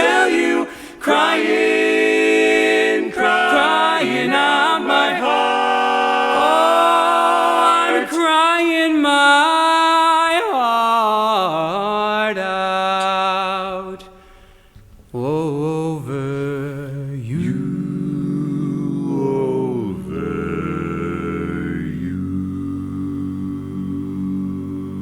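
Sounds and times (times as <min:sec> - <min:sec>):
barbershop quartet singing: 0:00.0 - 0:09.7, 0:16.0 - 0:25.0.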